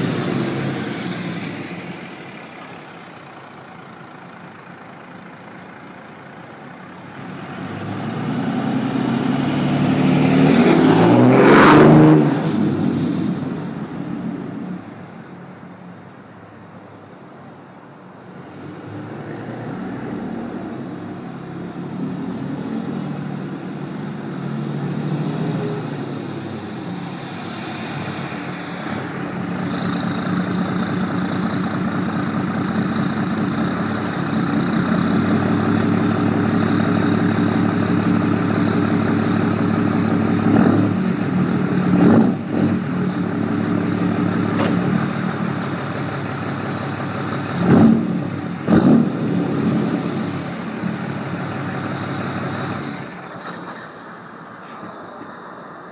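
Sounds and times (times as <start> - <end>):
diesel truck engine under load: 0.0 - 15.6, 21.8 - 55.9.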